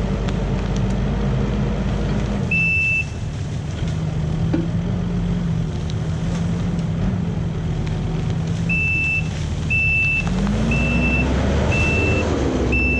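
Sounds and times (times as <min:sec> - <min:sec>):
skid steer engine revving: 0:00.0 - 0:12.9
reverse alarm beeping: 0:02.5 - 0:03.2, 0:08.7 - 0:12.9.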